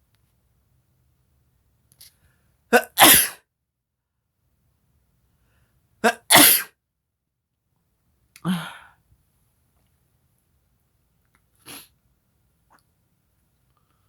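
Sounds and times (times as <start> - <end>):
person sneezing: 2.7 - 3.4, 6.0 - 6.7.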